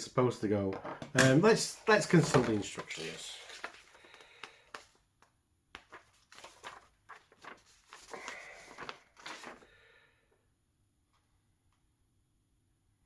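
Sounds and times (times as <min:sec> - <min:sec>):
paper sheet rustling: 0:01.2 - 0:09.8.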